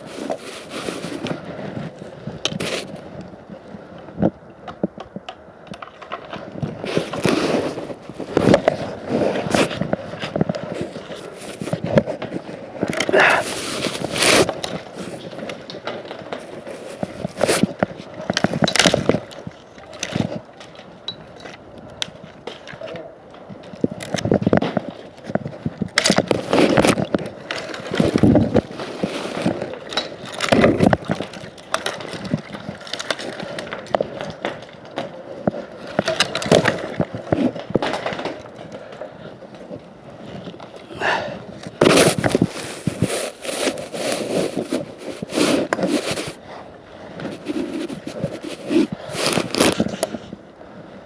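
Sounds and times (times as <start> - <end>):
scraping and rubbing: 0.0 - 3.0, 6.3 - 19.3, 24.1 - 38.5, 40.2 - 50.4.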